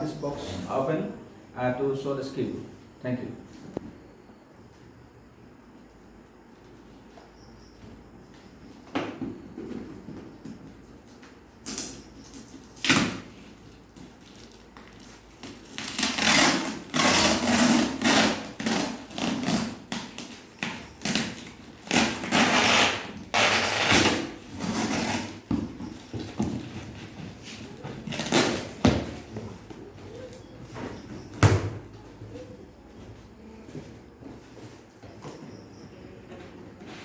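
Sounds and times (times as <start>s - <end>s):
cardboard and tape tearing: 11.6s - 29.1s.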